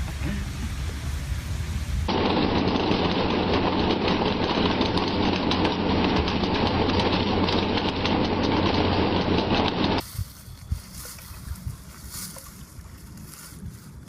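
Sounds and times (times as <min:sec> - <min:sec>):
motor running steadily: 0:00.0 - 0:10.0
low even hum: 0:00.0 - 0:14.0
rattling and rushing noise: 0:00.0 - 0:14.0.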